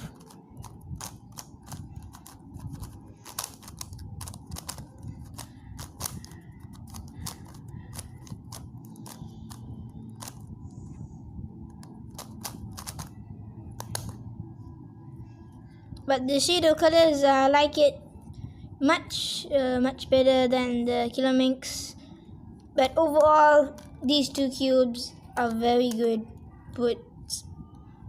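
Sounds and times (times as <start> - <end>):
plastic puzzle clicking: 0.0 - 10.5, 11.7 - 13.2, 13.8 - 14.2.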